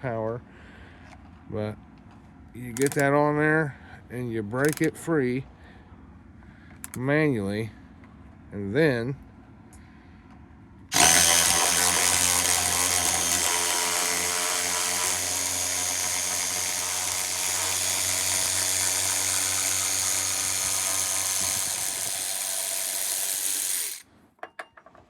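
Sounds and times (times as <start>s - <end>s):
cordless ratchet motor running: 2.8s - 3.0s, 10.9s - 24.0s.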